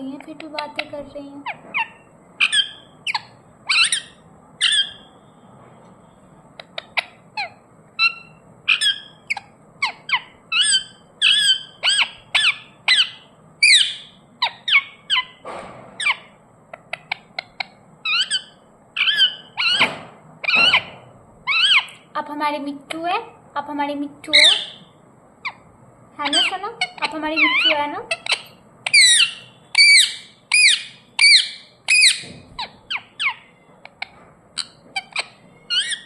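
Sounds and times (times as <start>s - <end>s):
parrot chirping and squawking: 0.4s - 5.2s, 6.4s - 15.4s, 16.0s - 22.1s, 24.3s - 36.0s.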